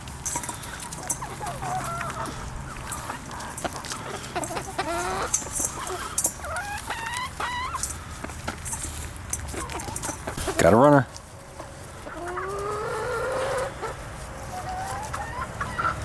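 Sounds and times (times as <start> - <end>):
hens clucking: 0.0 - 16.0
hen pitched calls: 1.1 - 8.1, 11.6 - 16.0.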